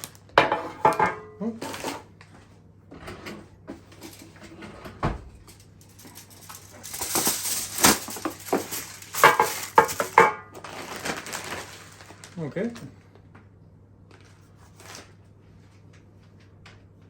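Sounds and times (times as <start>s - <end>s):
plastic bag crinkling: 0.0s - 0.4s, 5.8s - 13.3s.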